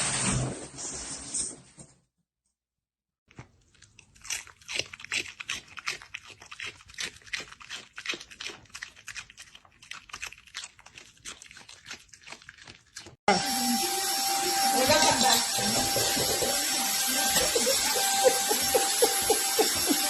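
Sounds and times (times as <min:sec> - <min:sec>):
pet crunching hard food: 0:03.3 - 0:13.2.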